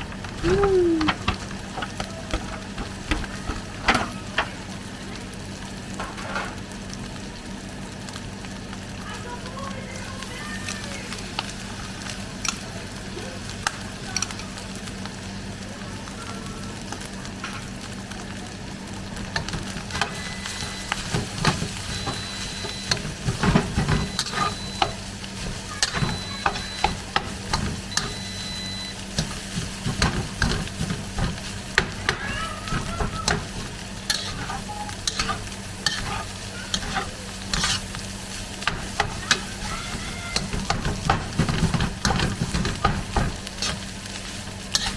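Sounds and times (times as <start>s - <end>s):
fried rice sizzling in a pan: 0.0s - 44.9s
spatula scraping a pan: 19.4s - 44.9s.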